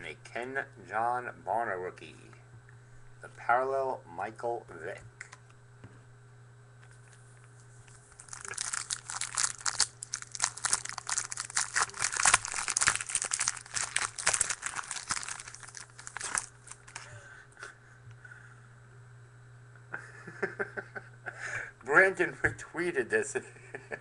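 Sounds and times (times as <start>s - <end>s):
foil wrapper crinkling: 8.1s - 17.1s.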